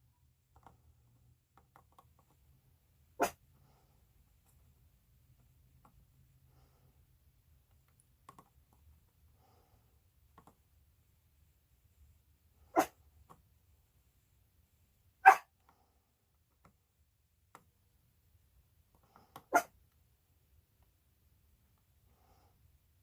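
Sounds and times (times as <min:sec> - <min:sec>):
dog barking: 0:03.2 - 0:03.4, 0:12.7 - 0:13.0, 0:15.2 - 0:15.5, 0:19.5 - 0:19.8.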